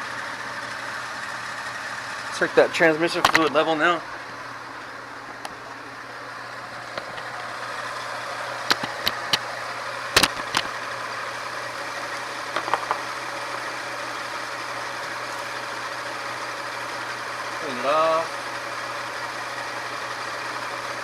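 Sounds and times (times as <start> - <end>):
car engine idling: 0.0 - 21.0
sharp clicks and knocks: 3.2 - 3.5, 6.9 - 7.5, 8.6 - 9.5, 10.2 - 10.8, 12.5 - 13.0.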